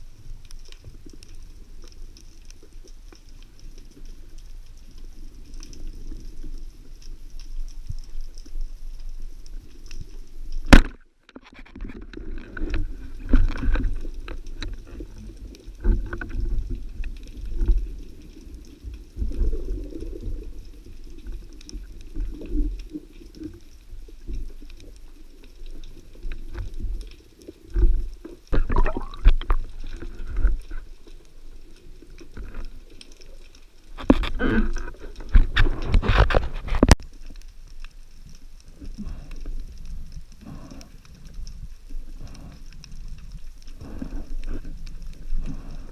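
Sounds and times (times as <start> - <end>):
underwater rumbling: 0.0 - 45.9
bubbling and gurgling: 28.5 - 30.7.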